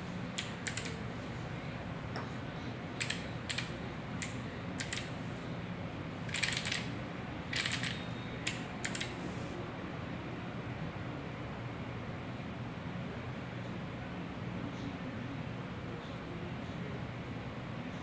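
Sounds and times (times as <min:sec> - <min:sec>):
steady low hum: 0:00.0 - 0:18.0
mechanical keyboard clicks: 0:00.4 - 0:01.0, 0:03.0 - 0:05.1, 0:06.3 - 0:06.9, 0:07.5 - 0:09.1.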